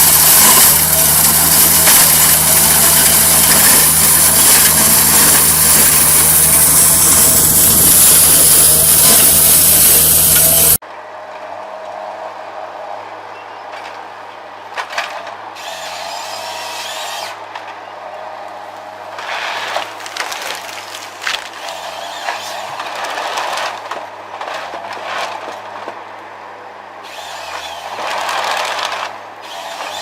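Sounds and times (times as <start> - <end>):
machine humming loudly: 0.0 - 10.8.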